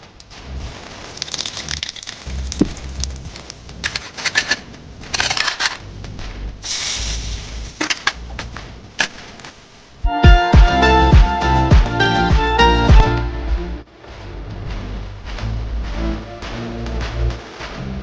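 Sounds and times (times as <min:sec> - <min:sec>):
food sizzling in a pan: 0:06.6 - 0:07.9.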